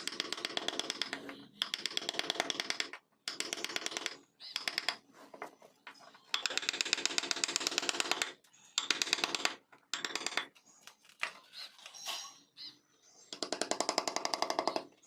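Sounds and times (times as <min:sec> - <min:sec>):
rapid tapping of wood carving: 0:00.0 - 0:05.0, 0:06.3 - 0:10.6, 0:13.3 - 0:15.0.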